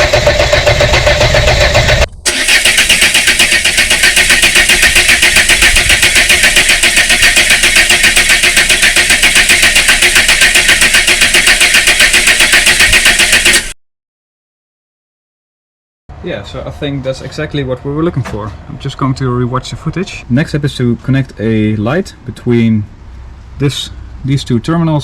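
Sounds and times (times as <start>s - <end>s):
starter motor cranking engine: 0.0s - 13.8s.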